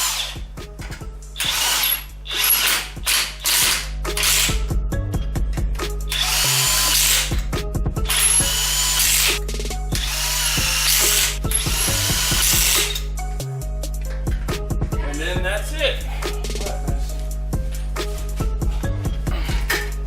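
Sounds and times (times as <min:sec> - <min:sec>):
impact wrench bursts: 0:00.0 - 0:00.5, 0:01.4 - 0:04.6, 0:06.1 - 0:07.4, 0:08.1 - 0:09.4, 0:10.0 - 0:13.0.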